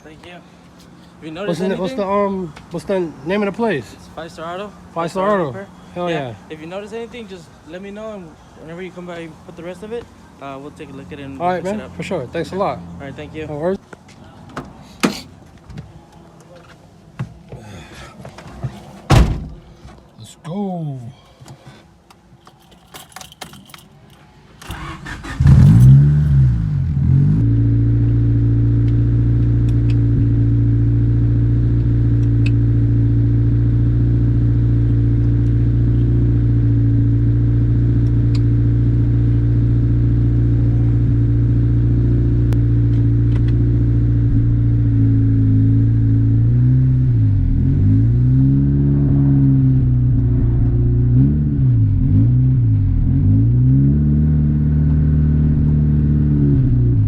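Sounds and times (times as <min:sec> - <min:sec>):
keys jingling: 0:22.2 - 0:24.3
car engine starting and idling: 0:22.4 - 0:57.0.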